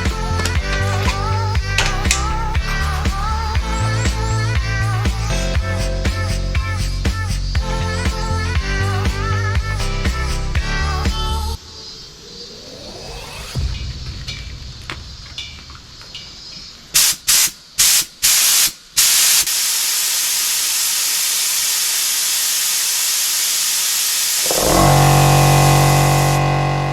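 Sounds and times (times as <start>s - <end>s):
music: 0.0s - 11.6s
compressed air hissing blasts: 17.0s - 26.4s.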